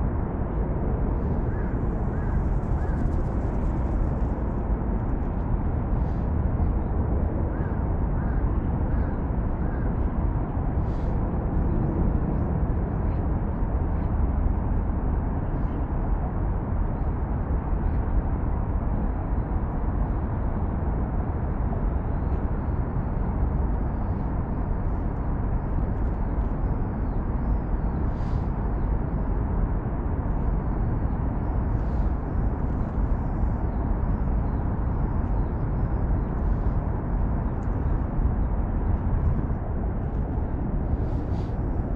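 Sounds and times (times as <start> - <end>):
low rumble of road traffic: 0.0 - 41.9.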